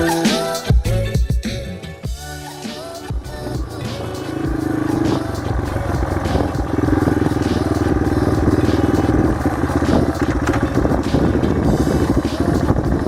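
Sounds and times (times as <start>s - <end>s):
dirt bike engine revving: 3.0s - 13.0s.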